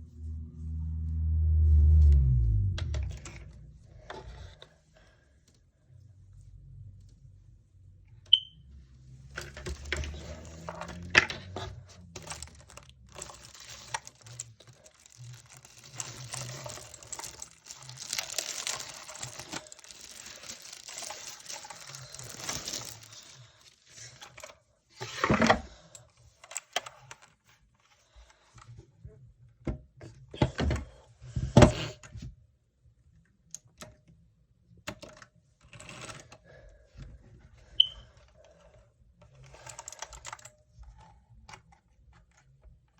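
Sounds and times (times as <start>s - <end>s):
packaging rustling and tearing: 12.0s - 24.1s.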